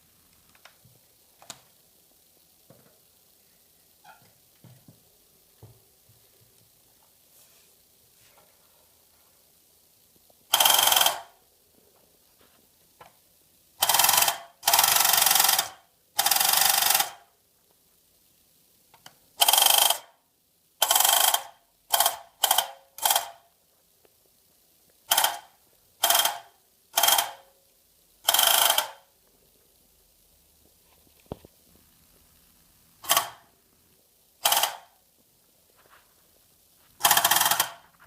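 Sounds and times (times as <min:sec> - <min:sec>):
toy machine gun rattling: 0:13.8 - 0:17.2, 0:19.4 - 0:20.1, 0:20.8 - 0:23.4, 0:25.1 - 0:26.4, 0:33.0 - 0:33.4, 0:34.4 - 0:35.0, 0:37.0 - 0:37.9.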